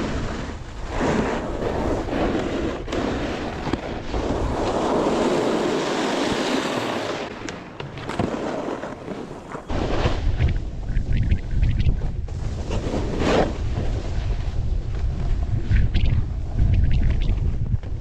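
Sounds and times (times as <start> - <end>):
snowboard scraping over snow: 0.0 - 18.0
wind buffeting microphone: 9.7 - 18.0.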